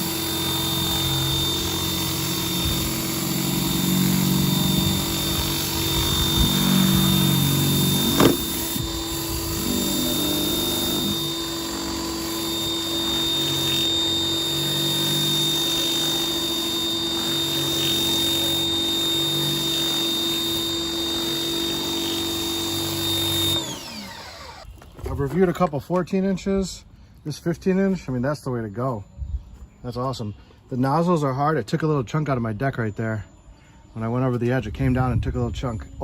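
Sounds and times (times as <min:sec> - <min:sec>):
pressure washer hum and whine: 0:00.0 - 0:24.7
sharp knock: 0:08.2 - 0:08.5.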